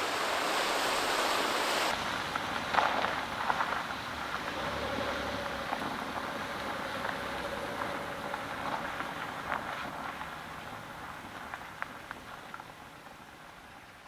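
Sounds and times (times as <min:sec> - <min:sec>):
steady rain: 0:00.0 - 0:14.0
faint steady tone: 0:03.9 - 0:11.2.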